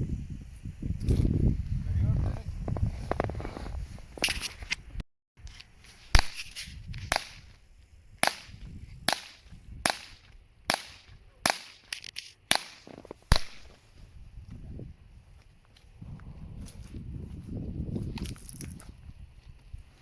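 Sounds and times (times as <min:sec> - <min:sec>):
pistol shots: 0:06.2 - 0:07.5, 0:08.2 - 0:13.7.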